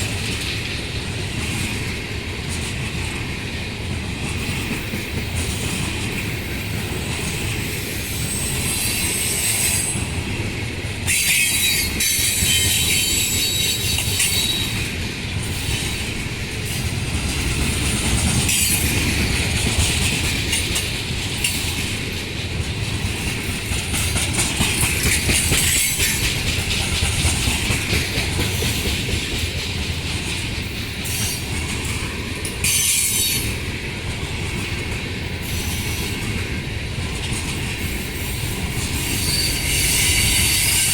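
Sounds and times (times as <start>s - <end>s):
freight train rumbling past: 0.0s - 40.9s
wheels clattering on rails: 0.0s - 40.9s
steel wheel squeal: 7.8s - 10.0s, 11.1s - 14.8s, 32.6s - 33.5s, 39.0s - 40.9s.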